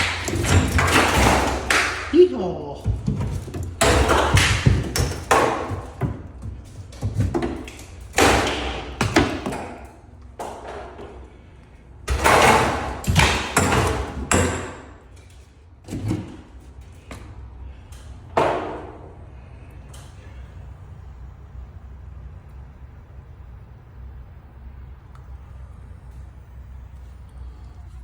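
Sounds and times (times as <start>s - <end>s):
drywall breaking and falling: 0.0s - 2.2s, 2.8s - 11.0s, 12.1s - 15.1s.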